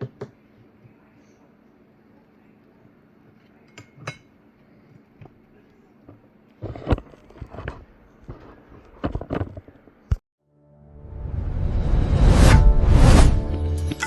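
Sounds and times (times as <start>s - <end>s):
dishes and utensils clattering: 3.6s - 4.4s.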